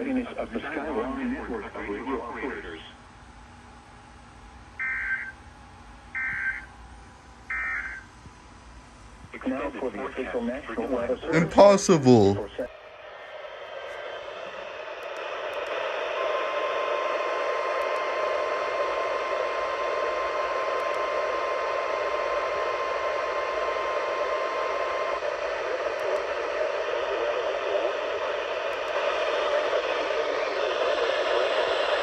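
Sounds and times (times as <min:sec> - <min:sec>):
steady warning alarm tone: 0:04.8 - 0:05.4, 0:06.1 - 0:06.7, 0:07.5 - 0:08.1
radio static hiss: 0:24.5 - 0:32.0.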